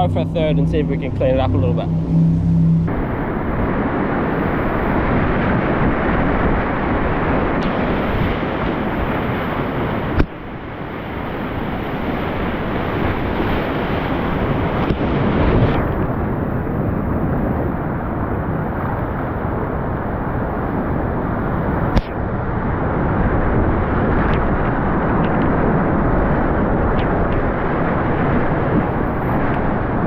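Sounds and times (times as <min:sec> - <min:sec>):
whitewater rushing roar: 0:00.0 - 0:30.0.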